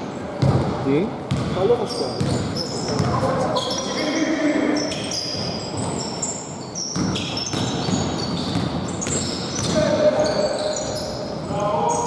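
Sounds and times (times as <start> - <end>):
basketball bouncing on court: 0.4 - 3.6, 6.9 - 11.0
sneakers squeaking on floor: 0.4 - 12.0.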